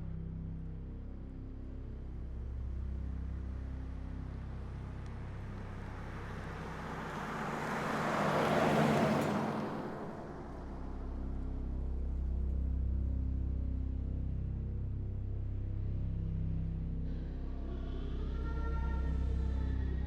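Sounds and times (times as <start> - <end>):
steady low drone: 0.0 - 20.0
vehicle passing by: 4.4 - 11.6.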